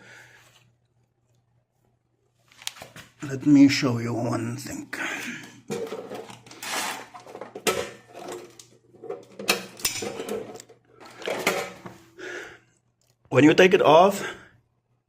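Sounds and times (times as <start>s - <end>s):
hard objects clattering and scraping: 5.4s - 12.0s.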